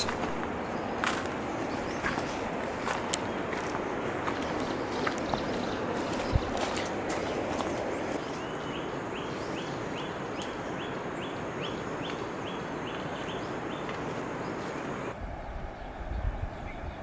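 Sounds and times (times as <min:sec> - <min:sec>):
bird calling short rising notes: 0:00.0 - 0:00.4.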